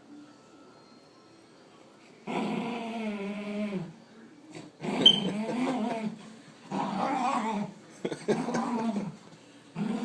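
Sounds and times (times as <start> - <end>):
dog play-growling: 2.2 - 3.9, 4.6 - 10.0.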